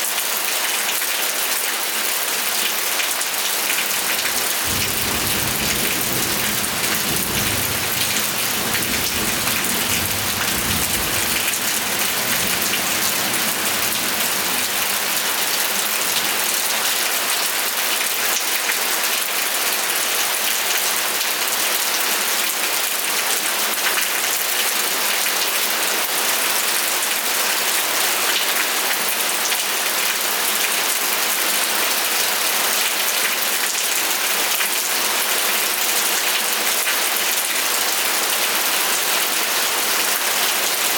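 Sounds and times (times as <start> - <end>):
heavy rain falling: 1.4 - 21.7, 23.9 - 40.9
low rumble: 4.0 - 16.5.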